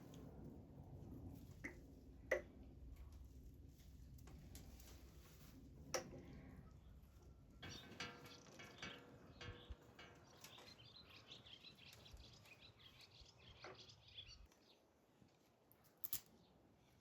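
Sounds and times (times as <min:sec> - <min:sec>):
small birds chirping: 0:07.6 - 0:15.0.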